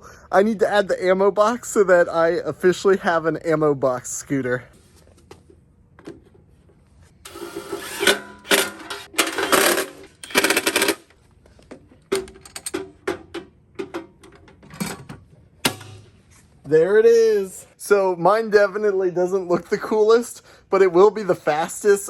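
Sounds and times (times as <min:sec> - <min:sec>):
tool grinding and rattling: 0:07.2 - 0:11.1.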